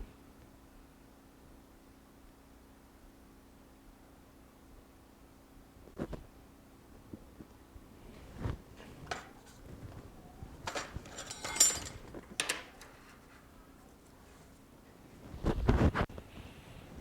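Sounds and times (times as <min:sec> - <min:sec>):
metallic clatter: 0:08.7 - 0:14.2.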